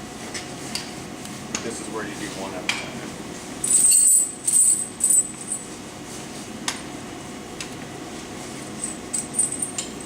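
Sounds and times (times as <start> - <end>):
metal chain links clinking: 3.6 - 5.6, 8.8 - 9.8.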